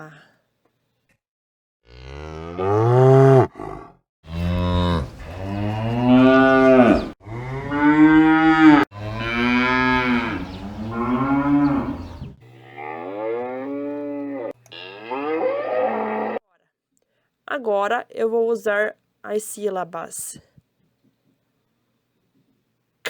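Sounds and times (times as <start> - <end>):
cow mooing: 1.9 - 16.4.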